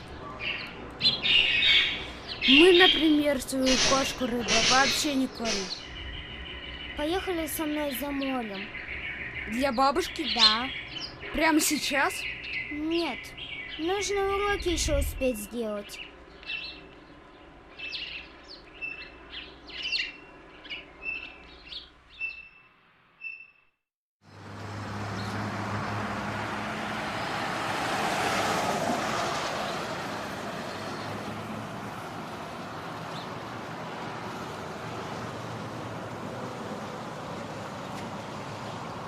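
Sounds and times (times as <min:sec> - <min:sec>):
small birds chirping: 0:00.0 - 0:23.7, 0:29.0 - 0:35.2
vehicle engine hum: 0:24.2 - 0:39.0.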